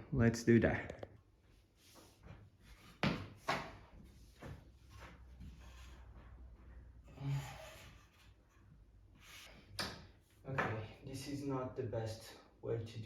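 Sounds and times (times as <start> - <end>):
wooden scrape or creak: 7.2 - 8.6
wood rubbing against wood: 7.2 - 9.7.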